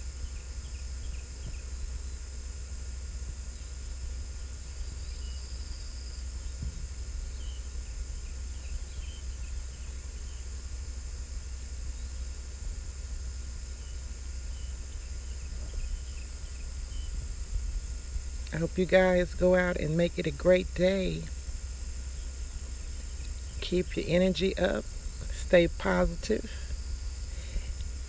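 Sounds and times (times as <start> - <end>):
crickets trilling: 0.0 - 28.0
low steady rumble: 0.0 - 28.0.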